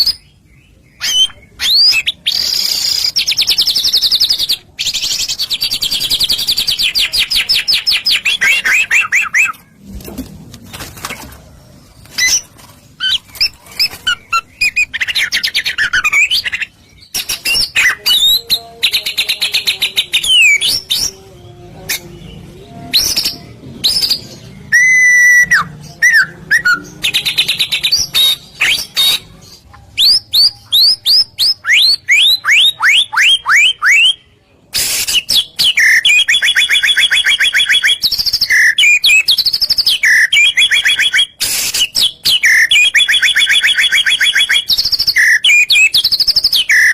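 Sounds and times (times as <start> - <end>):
bird singing whistles and trills: 1.0 - 9.6, 22.9 - 29.2, 34.8 - 46.9.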